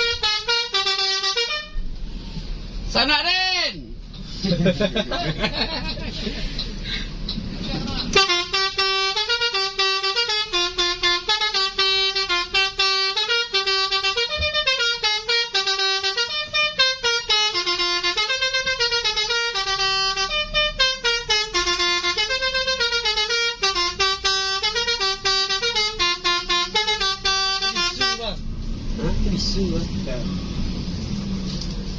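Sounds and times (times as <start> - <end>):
musical bus horn tune: 0.0 - 2.4, 8.0 - 28.4.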